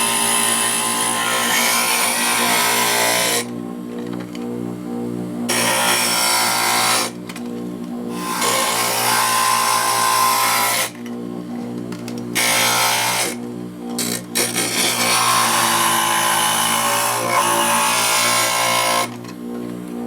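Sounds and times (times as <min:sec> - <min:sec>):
small power grinder grinding: 0:00.0 - 0:03.5, 0:05.5 - 0:07.4, 0:08.1 - 0:11.2, 0:11.9 - 0:19.4.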